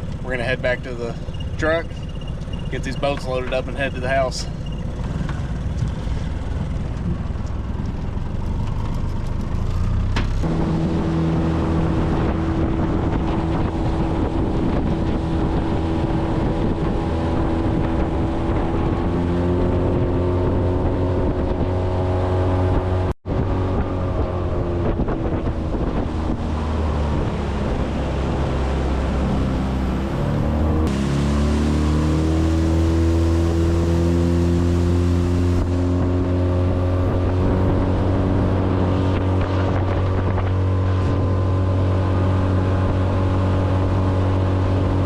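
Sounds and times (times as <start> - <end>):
outboard motor running: 0.0 - 45.0
wind buffeting microphone: 10.2 - 31.0, 31.6 - 45.0.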